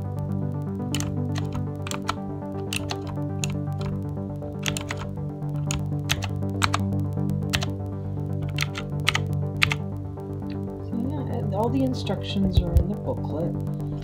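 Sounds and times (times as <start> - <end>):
background music: 0.0 - 14.0
mechanical keyboard clicks: 0.9 - 7.8, 8.4 - 9.9.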